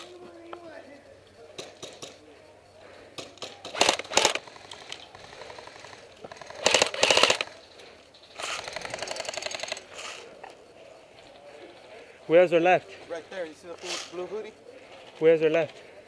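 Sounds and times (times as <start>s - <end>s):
airsoft guns firing bursts: 3.1s - 7.6s, 8.3s - 10.3s.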